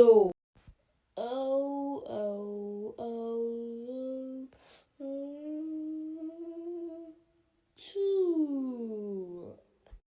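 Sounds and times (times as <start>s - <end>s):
high voice drawn-out vowels: 1.2s - 7.2s, 7.8s - 9.6s.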